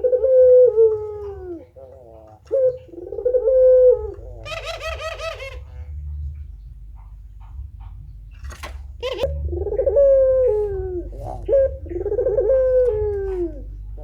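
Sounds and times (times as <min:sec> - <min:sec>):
dove cooing: 0:00.0 - 0:14.0
steady low hum: 0:00.0 - 0:14.0.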